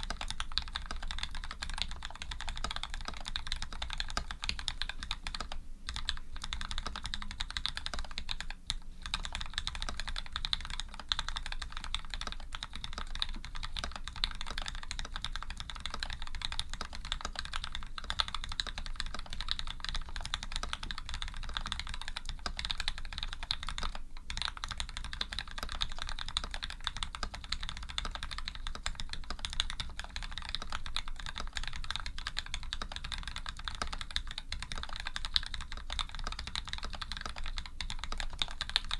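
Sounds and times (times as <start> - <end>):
fast mechanical keyboard typing: 0.0 - 38.9.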